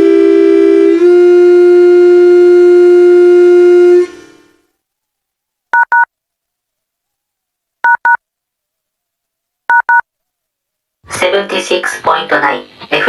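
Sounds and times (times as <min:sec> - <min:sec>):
two-tone beeps: 0:05.8 - 0:06.1, 0:07.9 - 0:08.2, 0:09.7 - 0:10.0.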